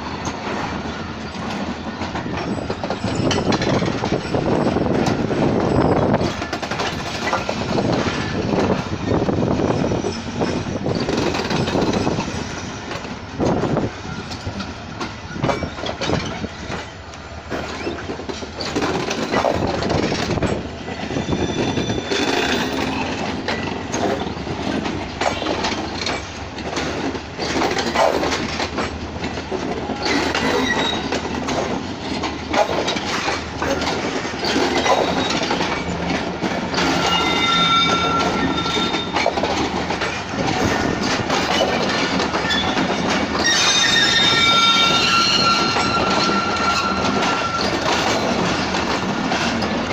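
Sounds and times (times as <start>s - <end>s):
train wheels clattering over rail joints: 0.0s - 49.9s
faint high squeals: 9.6s - 13.0s, 20.8s - 23.1s, 30.0s - 31.2s, 36.7s - 39.4s, 42.4s - 48.1s.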